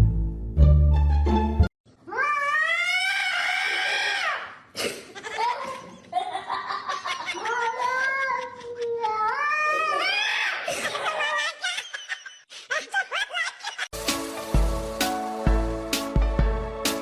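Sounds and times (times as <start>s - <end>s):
cat yowling: 2.1s - 4.4s.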